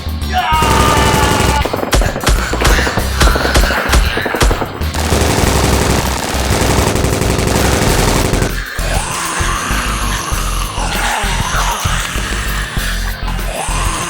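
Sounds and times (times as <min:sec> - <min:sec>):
rapid automatic gunfire: 0:00.6 - 0:08.9.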